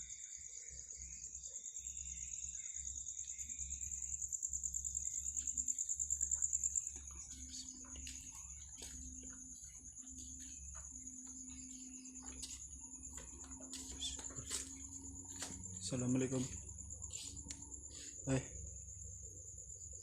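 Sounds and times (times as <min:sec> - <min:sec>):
crickets trilling: 0:00.0 - 0:20.0.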